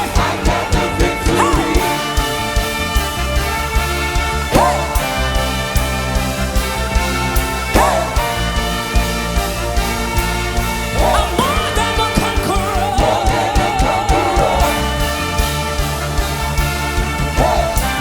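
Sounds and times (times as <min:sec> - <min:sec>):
person singing: 0:00.0 - 0:03.0, 0:11.0 - 0:15.7, 0:17.2 - 0:18.0
gospel music drum beat: 0:00.0 - 0:18.0.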